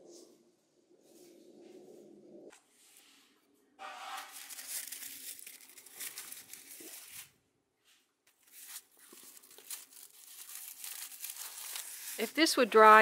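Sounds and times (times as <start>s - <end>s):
corn husks rustling and tearing: 3.8s - 7.4s, 8.4s - 13.0s
sharp crackles: 4.0s - 7.3s, 8.5s - 13.0s.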